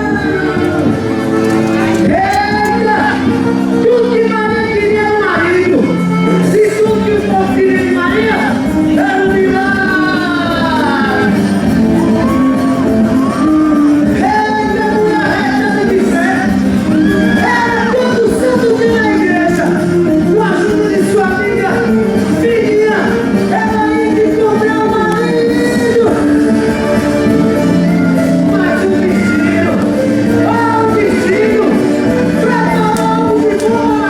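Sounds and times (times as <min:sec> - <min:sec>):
loud dance music with singing: 0:00.0 - 0:03.7, 0:04.4 - 0:34.0
people shouting and whooping: 0:09.9 - 0:15.6, 0:16.8 - 0:18.7.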